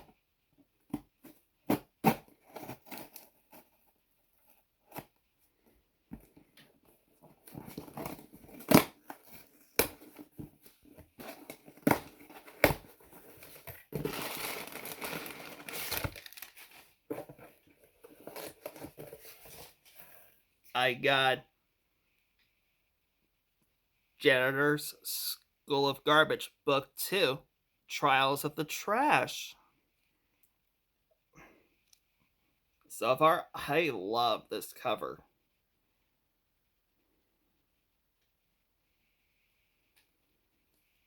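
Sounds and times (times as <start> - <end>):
packaging crinkling and rustling: 7.1 - 19.9
packaging snapping: 14.0 - 16.8
packaging tearing: 14.0 - 16.8.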